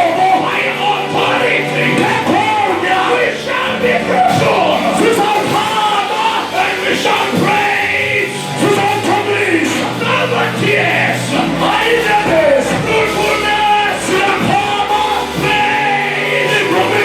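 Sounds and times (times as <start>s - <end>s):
band playing praise music: 0.0s - 17.0s
voices singing: 0.0s - 17.0s.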